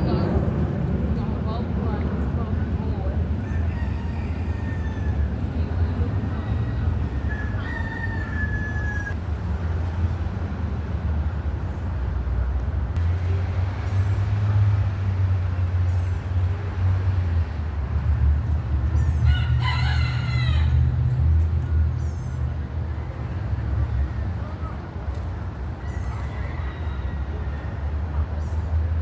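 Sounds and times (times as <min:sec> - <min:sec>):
rooster crowing: 0:03.4 - 0:05.3, 0:06.3 - 0:09.2, 0:19.2 - 0:20.9, 0:25.9 - 0:27.8.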